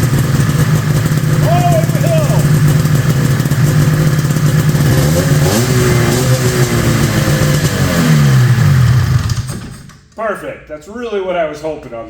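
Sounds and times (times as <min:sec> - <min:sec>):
snowmobile engine revving: 0:00.0 - 0:09.4.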